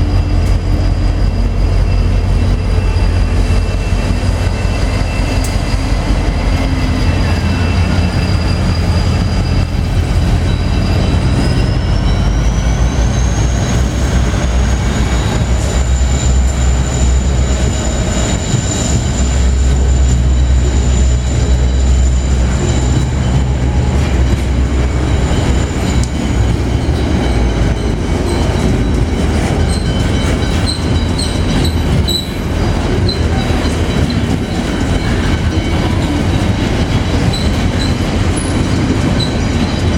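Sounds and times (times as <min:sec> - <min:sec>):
freight locomotives rumbling: 0:00.0 - 0:39.9
faint high squeaks: 0:00.2 - 0:23.9.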